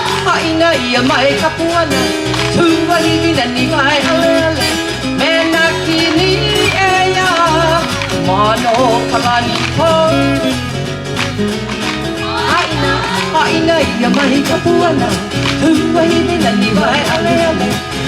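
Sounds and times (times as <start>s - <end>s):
person singing: 0.0s - 17.7s
guitar: 0.0s - 18.0s
repeating bass line: 4.6s - 16.6s.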